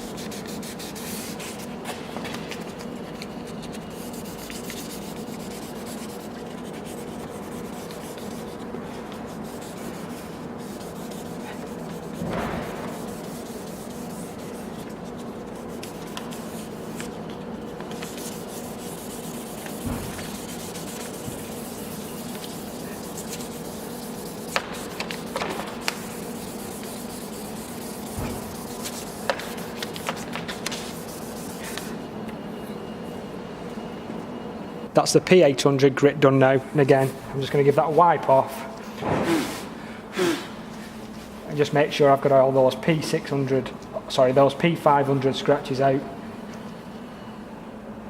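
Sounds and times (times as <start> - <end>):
sanding disc scuffing plastic: 0.0 - 31.9.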